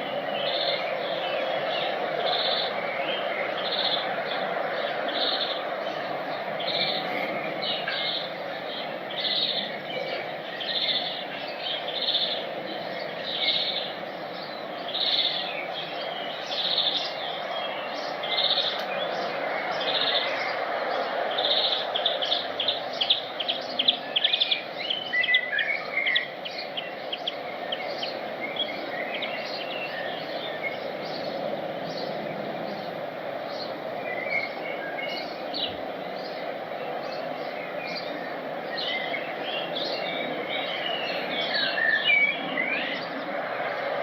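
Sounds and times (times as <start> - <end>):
steady background noise: 0.0 - 44.0
small birds chirping: 21.4 - 43.7.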